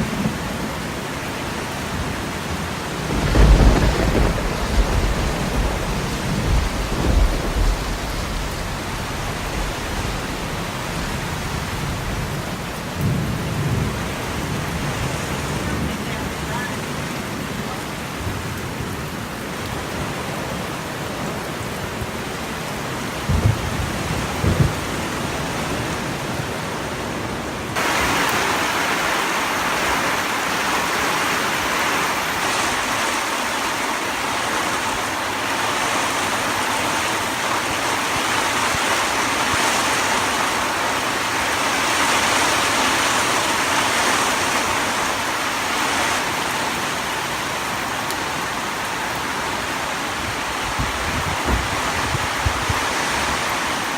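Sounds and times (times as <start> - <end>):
water rushing: 0.0 - 53.9
low thumps: 50.8 - 52.6.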